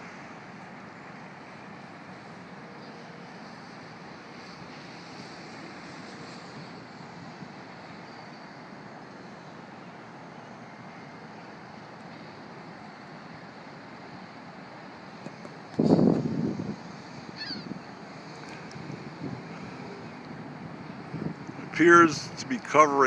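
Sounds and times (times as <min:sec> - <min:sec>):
outdoor rushing hiss: 0:00.0 - 0:23.0.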